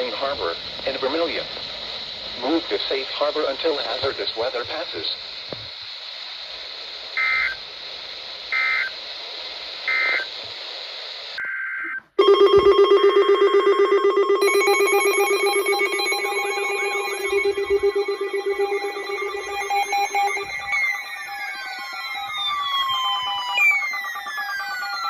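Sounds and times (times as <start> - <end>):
buzzy data tone bursts: 7.2 - 7.6, 8.5 - 9.0, 9.9 - 10.3, 12.2 - 25.0
pulsing electronic alert tone: 12.2 - 25.0.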